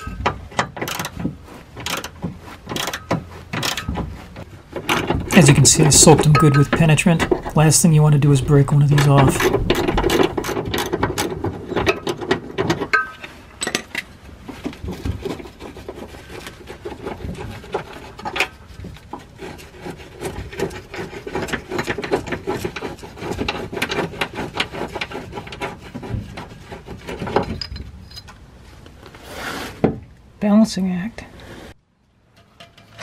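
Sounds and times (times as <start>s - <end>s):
metal rubbing and clinking: 0.0s - 25.8s, 26.4s - 28.4s
ratchet wrench clicking: 0.8s - 1.1s, 1.8s - 2.1s, 2.8s - 3.0s.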